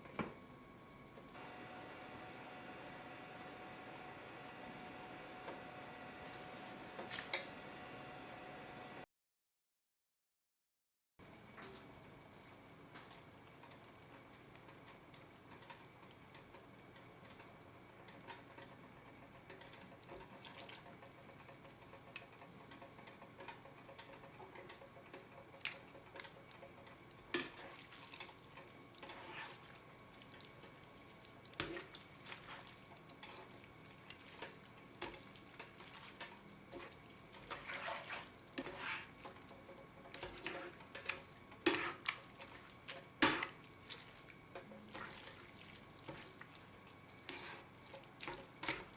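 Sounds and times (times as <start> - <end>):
faint steady hum: 0.0 - 9.0.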